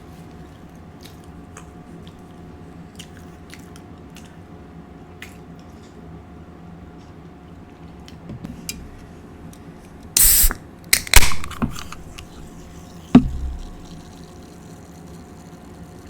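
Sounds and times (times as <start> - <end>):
sharp low thump: 13.2 - 14.1.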